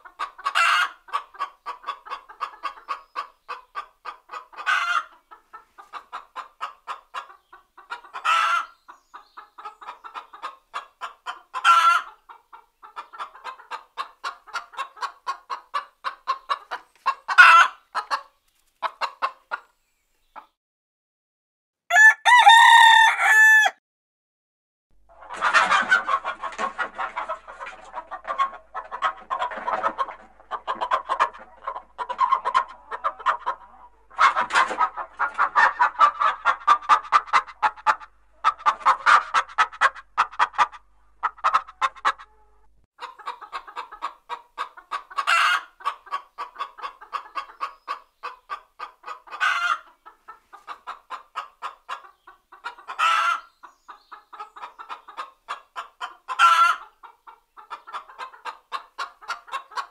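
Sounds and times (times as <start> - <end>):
hens clucking: 0.0 - 20.5, 25.1 - 59.9
shrill hen call: 21.9 - 23.8.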